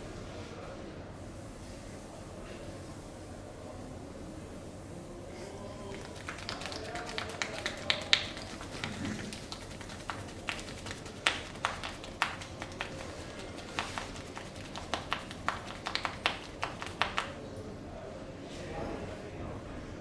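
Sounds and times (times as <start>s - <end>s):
hands tapping and slapping: 5.8s - 17.4s.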